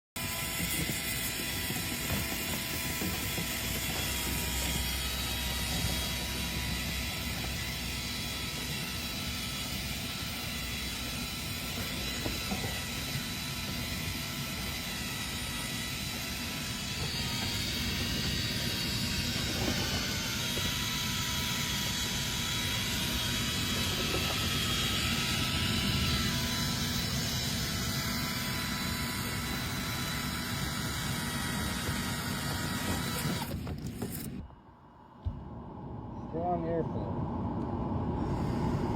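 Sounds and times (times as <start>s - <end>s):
power tools whining in duct: 0.2s - 38.9s.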